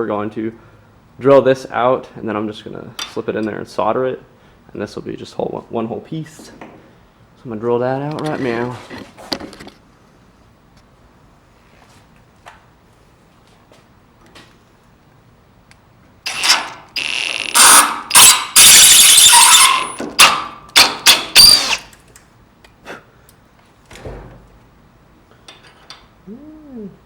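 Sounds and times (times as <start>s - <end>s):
high ringing whine of drill bit: 16.3s - 20.0s, 21.4s - 21.8s
electric drill boring brass: 16.3s - 20.3s, 21.0s - 21.9s.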